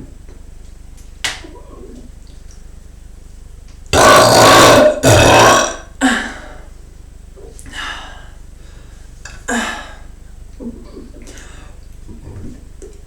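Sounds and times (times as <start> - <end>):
deep belches: 3.9 - 5.9.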